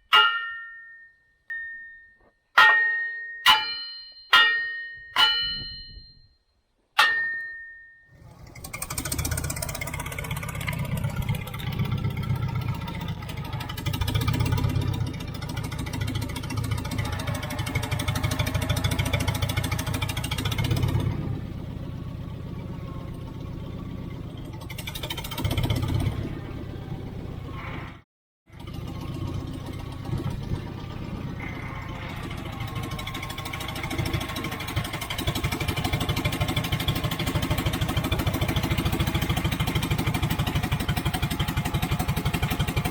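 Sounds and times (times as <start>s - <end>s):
ringing metal clang: 0.0s - 8.2s
engine running: 8.1s - 27.9s, 28.5s - 42.9s.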